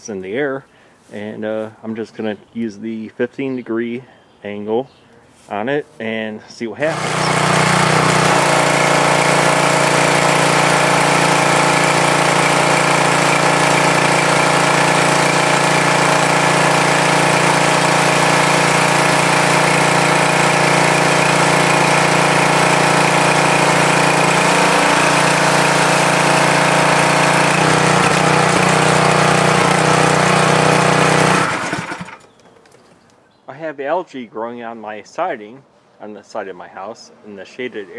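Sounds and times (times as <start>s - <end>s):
high-pressure water jet hissing: 6.8s - 22.0s
pressure washer engine running: 6.8s - 32.3s.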